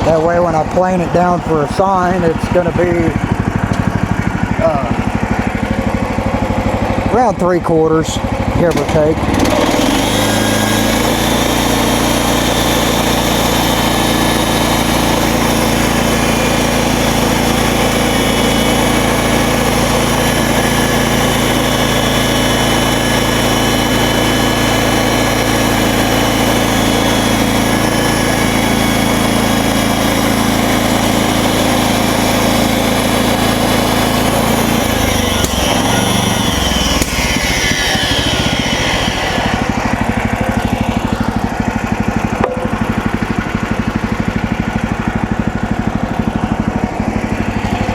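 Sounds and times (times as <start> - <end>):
gas engine running: 0.0 - 47.9
falling whines: 8.7 - 45.2.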